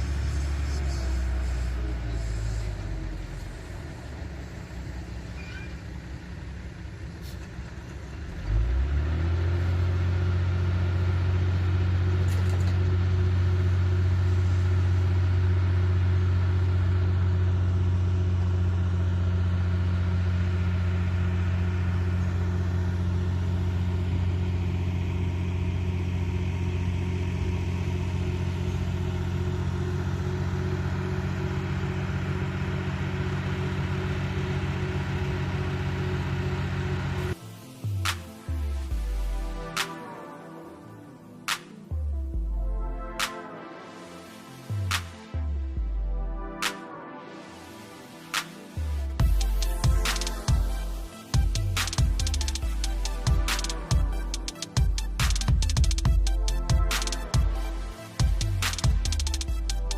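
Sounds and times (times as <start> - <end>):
excavator diesel engine revving: 0.0 - 37.4.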